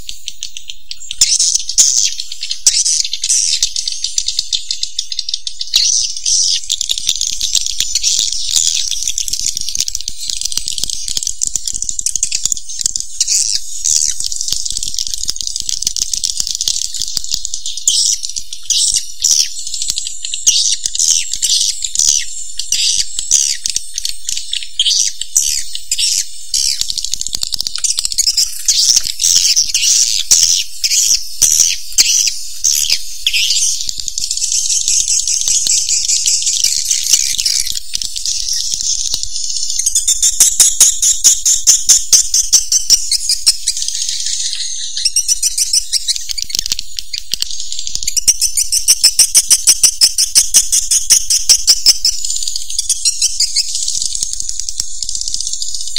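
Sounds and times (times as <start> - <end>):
swiftlet twittering calls: 0.0 - 55.9.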